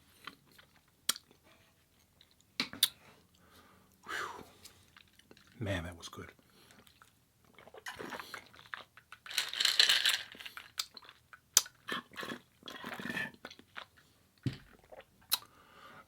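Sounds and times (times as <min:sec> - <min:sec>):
person chewing and crunching food: 0:00.0 - 0:05.6, 0:06.3 - 0:15.6.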